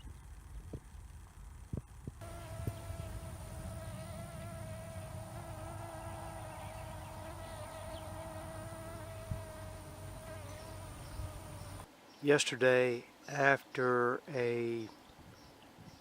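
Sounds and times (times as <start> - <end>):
high-pitched insect buzz: 2.2 - 11.9.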